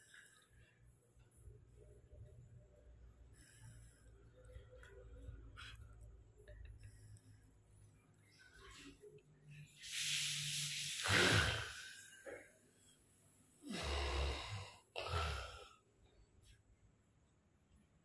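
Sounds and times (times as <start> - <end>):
person snoring: 11.0 - 12.0, 13.6 - 15.8.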